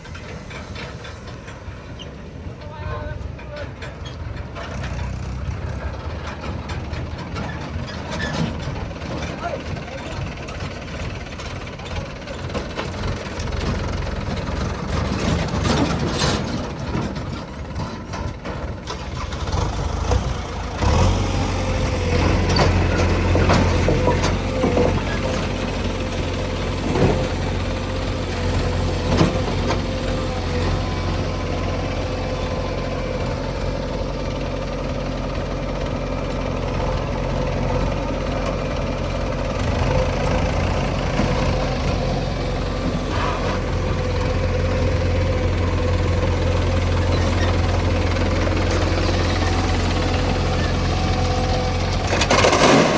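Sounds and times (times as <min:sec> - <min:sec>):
heavy machinery diesel engine: 0:00.0 - 0:52.9.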